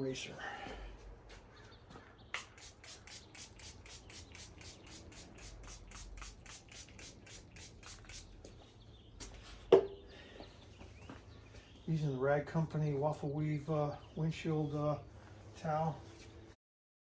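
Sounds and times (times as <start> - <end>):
towel wiping glass: 2.4 - 8.3.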